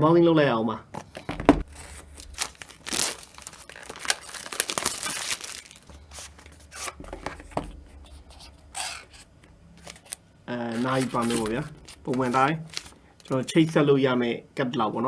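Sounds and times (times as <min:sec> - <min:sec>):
packaging tearing and crinkling: 0:01.0 - 0:07.0, 0:08.8 - 0:13.6
box rustles and knocks: 0:01.0 - 0:08.5, 0:10.8 - 0:13.5.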